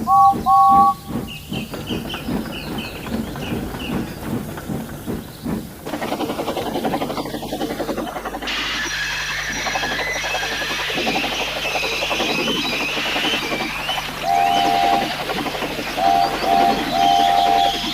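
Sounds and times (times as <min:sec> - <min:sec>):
steam locomotive whistle: 0:00.0 - 0:01.1, 0:14.2 - 0:17.9
steam engine puffing: 0:00.0 - 0:17.9
steam hissing: 0:00.0 - 0:17.9.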